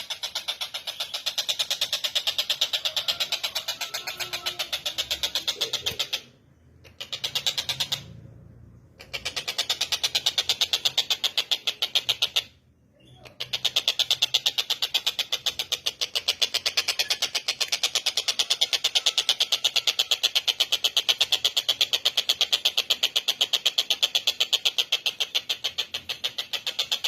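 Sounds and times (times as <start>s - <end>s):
kingfisher rattling call: 0.0s - 8.2s.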